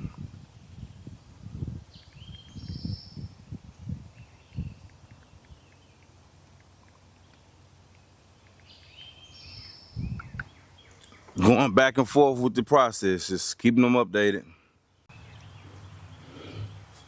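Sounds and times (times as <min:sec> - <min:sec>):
wind buffeting microphone: 0:00.0 - 0:05.7, 0:09.4 - 0:10.6
birds chirping: 0:01.8 - 0:11.7, 0:14.9 - 0:17.0.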